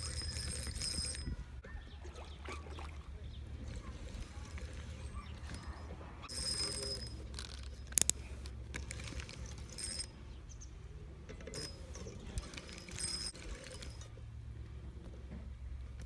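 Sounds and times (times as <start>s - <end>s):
fishing reel whirring: 0.0s - 1.3s, 6.3s - 7.2s.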